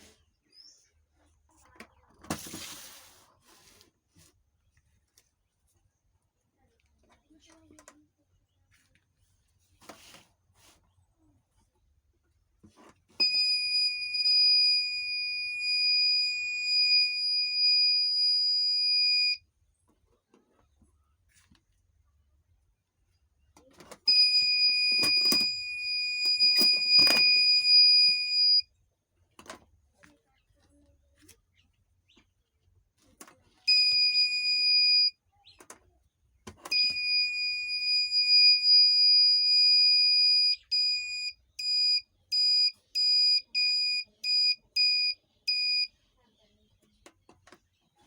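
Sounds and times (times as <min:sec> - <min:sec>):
shrill electronic alarm buzzer: 0:13.3 - 0:19.4, 0:24.1 - 0:28.6, 0:33.7 - 0:35.1
quick alarm beeps: 0:24.1 - 0:28.6.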